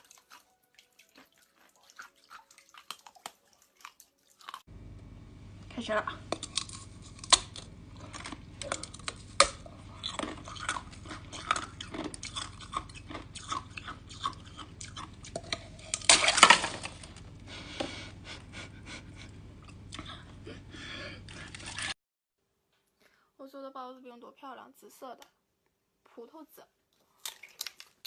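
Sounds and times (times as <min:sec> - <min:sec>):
ice crunching between teeth: 0:00.0 - 0:04.7, 0:06.3 - 0:17.2, 0:21.3 - 0:22.0, 0:27.0 - 0:28.0.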